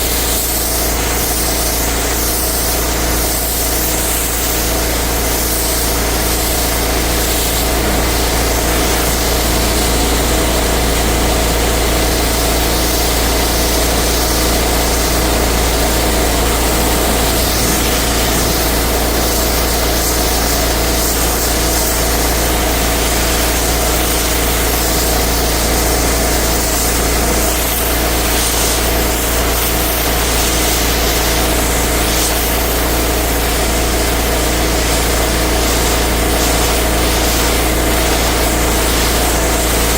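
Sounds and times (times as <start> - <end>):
high-pressure water spray hiss: 0.0 - 39.9
pressure washer engine hum: 0.0 - 39.9.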